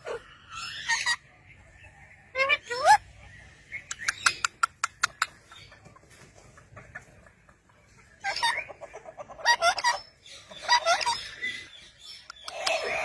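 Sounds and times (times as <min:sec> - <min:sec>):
parrot warbling calls: 0:02.3 - 0:03.0, 0:09.4 - 0:11.4.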